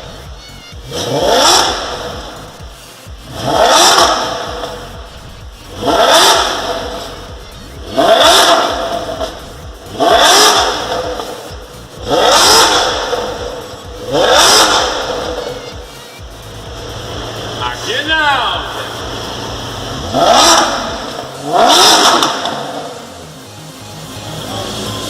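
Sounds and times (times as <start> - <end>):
car engine revving: 0.0 - 25.0.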